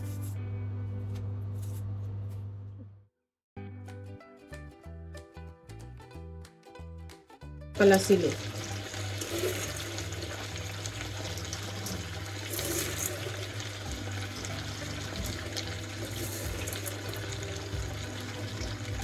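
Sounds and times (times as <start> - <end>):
soft background music: 0.0 - 2.4, 3.7 - 19.0
tap water running into sink: 7.8 - 19.0.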